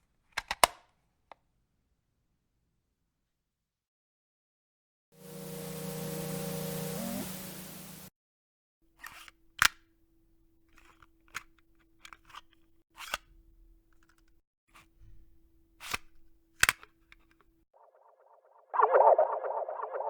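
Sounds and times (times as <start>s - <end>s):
faint steady hum: 5.2s - 8.1s.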